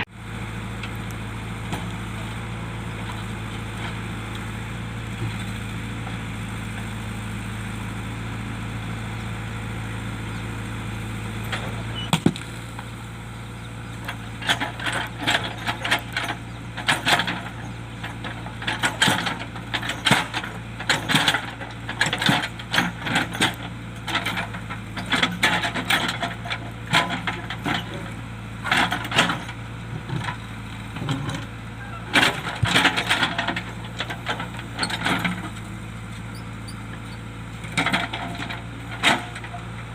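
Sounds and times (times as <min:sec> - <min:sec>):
diesel engine running: 0:00.0 - 0:39.9
rocks clanking in steel bucket: 0:14.1 - 0:35.8, 0:37.7 - 0:39.9.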